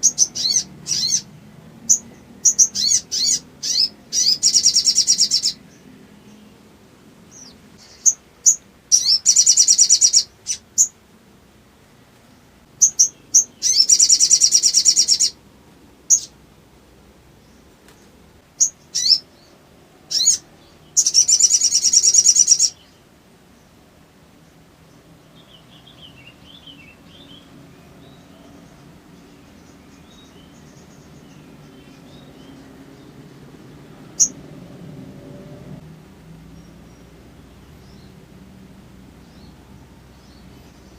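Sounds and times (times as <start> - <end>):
rapid high bird trills: 0.0 - 1.3, 1.9 - 5.8, 7.3 - 11.0, 12.8 - 15.4, 18.6 - 19.5, 20.1 - 22.9
bird chipping: 0.0 - 6.4, 7.3 - 11.0, 12.8 - 15.4, 16.1 - 16.4, 18.6 - 19.5, 20.1 - 23.0.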